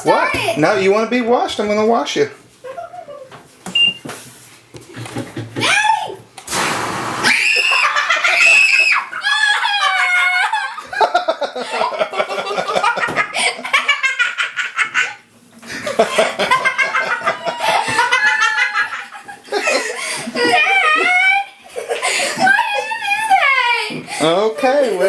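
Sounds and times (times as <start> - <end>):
high-pitched laughter and giggles: 7.3 - 24.0.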